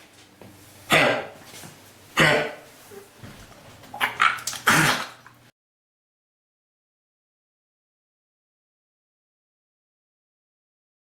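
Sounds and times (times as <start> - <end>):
dog coughing: 0.9 - 1.4, 2.2 - 2.7, 3.9 - 5.4.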